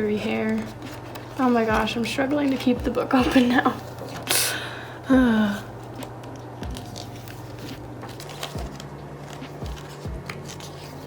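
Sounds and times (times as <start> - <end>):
book pages rustling: 0.0 - 4.4, 5.6 - 11.0.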